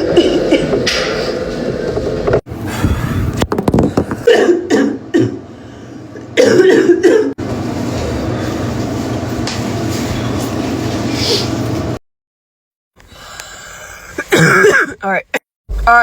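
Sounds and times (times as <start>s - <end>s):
woman coughing harshly: 4.2s - 5.4s, 6.4s - 7.4s, 14.2s - 15.4s.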